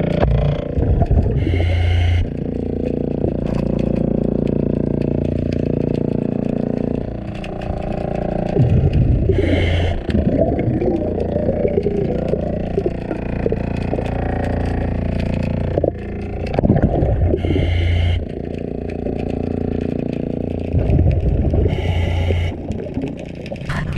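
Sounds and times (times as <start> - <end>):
low hum: 0.0 - 23.9
underwater scrubbing and scraping: 0.0 - 23.9
scuba regulator breathing bursts: 1.3 - 2.3, 9.3 - 11.0, 17.3 - 18.2, 21.5 - 22.8.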